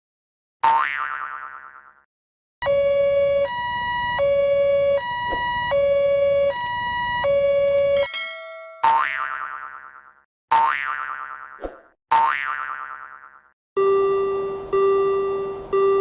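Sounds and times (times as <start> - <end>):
springy boing: 0.6 - 2.0, 8.7 - 13.5
two-tone synthesized siren: 2.6 - 8.0.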